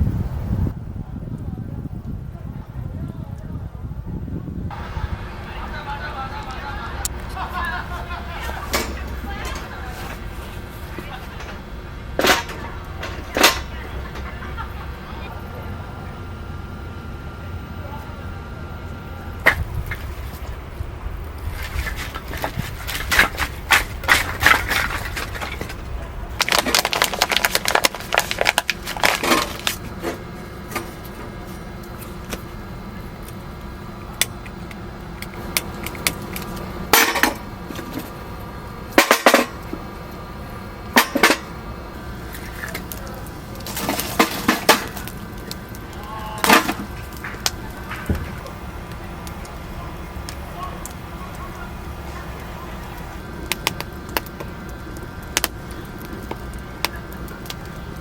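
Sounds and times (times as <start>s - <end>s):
faint steady hum: 0.0s - 58.0s
clicks and clattering knocks: 10.9s - 14.6s, 21.6s - 31.0s.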